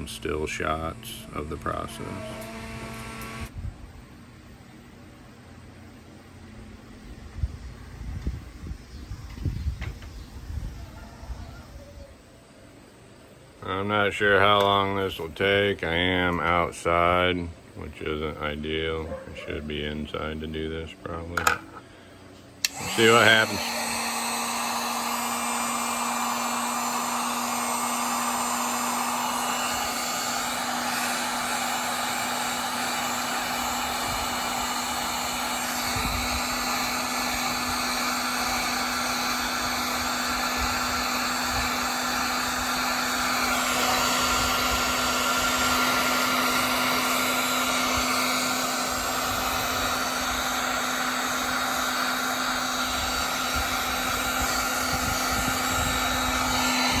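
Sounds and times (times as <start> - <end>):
heat gun hissing and humming: 0.0 - 3.6, 19.7 - 57.0.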